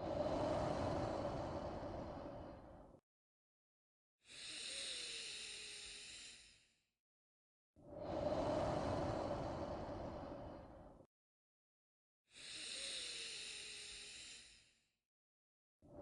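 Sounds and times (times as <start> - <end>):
person breathing slowly: 0.0 - 3.0, 4.2 - 6.4, 7.8 - 11.1, 12.3 - 14.8.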